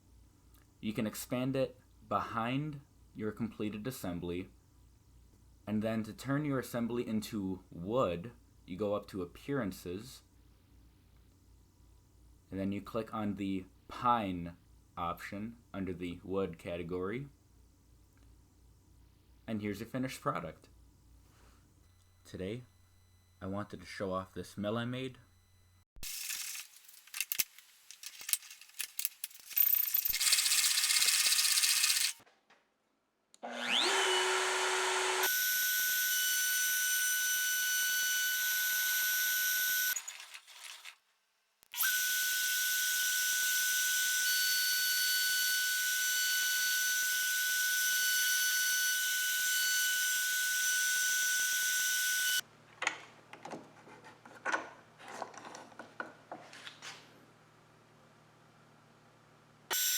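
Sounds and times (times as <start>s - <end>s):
router spinning with high whine: 30.2s - 32.2s, 33.4s - 39.0s.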